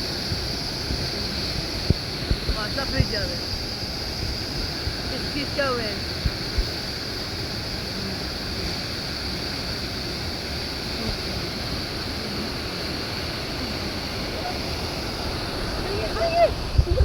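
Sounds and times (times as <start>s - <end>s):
river water rushing over rapids: 0.0s - 17.0s.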